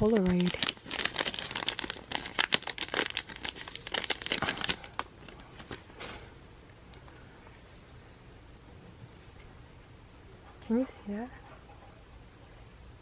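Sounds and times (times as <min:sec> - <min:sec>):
packaging crinkling and rustling: 0:00.0 - 0:06.4.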